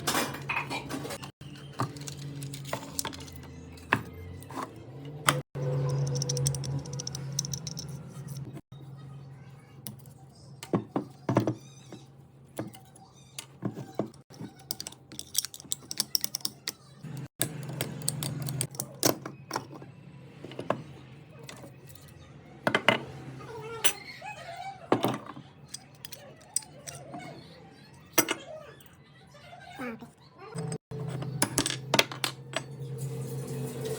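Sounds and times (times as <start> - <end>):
small hard parts clicking: 5.7 - 8.6, 14.2 - 19.2.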